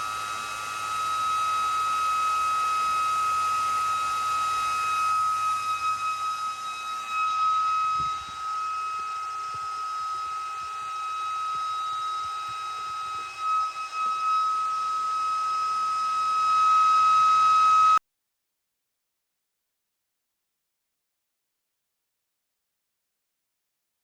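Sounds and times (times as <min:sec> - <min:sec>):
electric fan high whine: 0:00.0 - 0:18.0.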